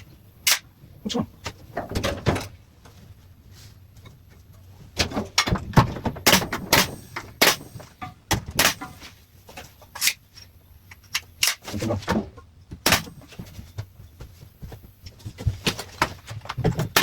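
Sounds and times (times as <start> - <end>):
sharp knocks and clatters: 4.0 - 17.0.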